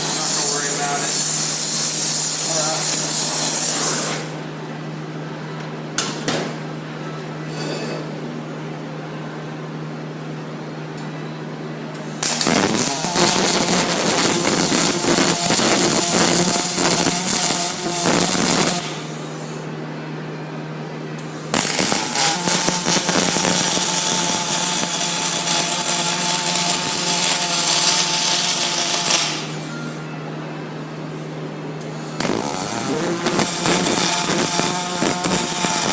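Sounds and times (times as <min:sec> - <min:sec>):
welding arc crackling: 0:00.0 - 0:04.4, 0:12.2 - 0:19.4, 0:21.2 - 0:29.7, 0:31.8 - 0:35.9
welding machine hum: 0:00.0 - 0:04.4, 0:11.9 - 0:19.8, 0:21.2 - 0:30.1, 0:31.7 - 0:35.9.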